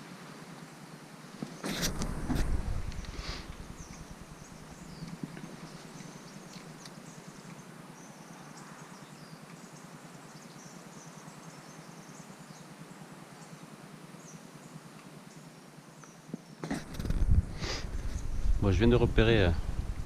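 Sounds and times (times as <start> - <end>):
steady hiss: 0.0 - 8.6, 9.5 - 20.0
distant bird chirps: 1.4 - 12.6.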